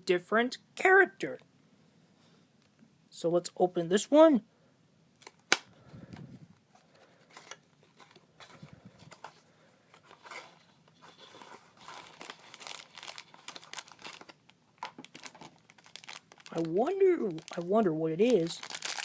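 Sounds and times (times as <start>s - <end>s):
packaging crinkling and tearing: 10.1s - 19.0s.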